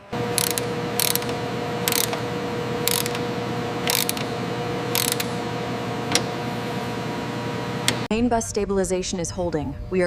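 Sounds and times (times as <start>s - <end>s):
machine hum: 0.0s - 8.1s
ratcheting clamp clacks: 0.3s - 5.4s.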